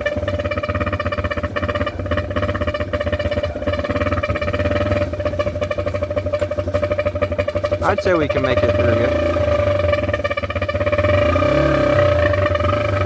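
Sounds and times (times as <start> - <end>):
dirt bike engine running: 0.0 - 13.0
air horn honking: 7.8 - 10.1.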